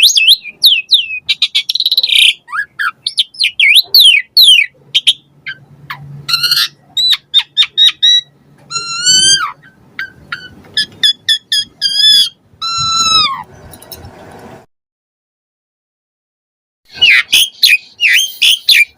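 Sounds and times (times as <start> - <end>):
starling singing: 0.0 - 13.8, 16.9 - 18.9.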